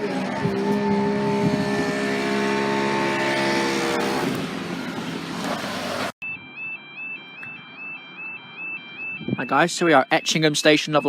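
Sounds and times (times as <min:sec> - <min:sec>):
diesel train engine: 0:00.0 - 0:06.1
level crossing warbling alarm: 0:00.1 - 0:05.0, 0:06.2 - 0:11.0.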